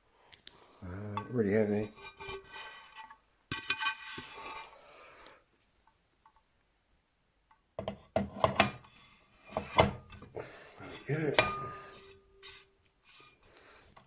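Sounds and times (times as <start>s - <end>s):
rubbing and scraping on turntable: 1.6s - 4.7s.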